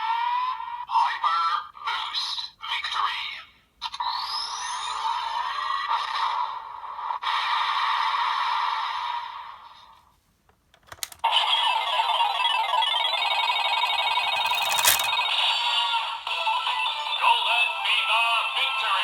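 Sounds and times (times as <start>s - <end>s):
toy clicks: 10.8s - 11.2s, 14.3s - 15.2s
electronic slot-machine jingle: 11.8s - 15.4s.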